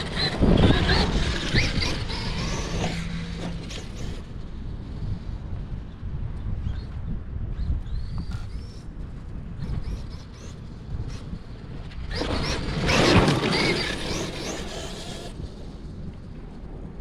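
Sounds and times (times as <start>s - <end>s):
electric rc truck motor whining: 0.0s - 5.4s, 9.5s - 16.0s
tires rushing on grass: 0.0s - 5.5s, 11.1s - 16.9s
low wind rumble: 0.0s - 17.0s.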